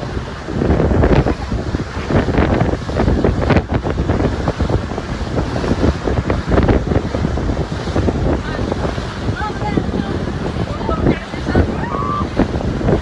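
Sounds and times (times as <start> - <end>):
rushing sea water: 0.0 - 13.0
wind buffeting microphone: 0.0 - 13.0.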